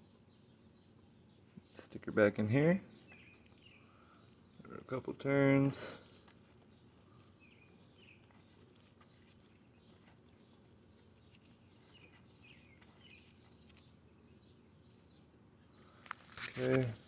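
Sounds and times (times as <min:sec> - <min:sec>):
faint bird chirps: 0:00.0 - 0:05.0, 0:06.9 - 0:16.0.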